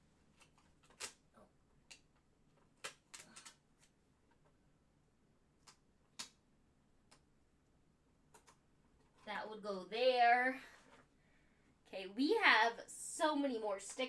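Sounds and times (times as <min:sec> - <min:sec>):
plastic toy pieces clicking: 0:02.8 - 0:03.6.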